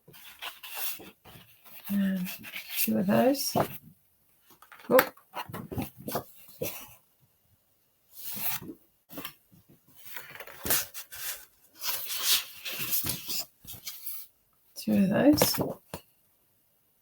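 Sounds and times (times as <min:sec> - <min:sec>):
card sheets sliding and rubbing: 0:00.1 - 0:03.8, 0:08.2 - 0:09.4, 0:10.0 - 0:14.3.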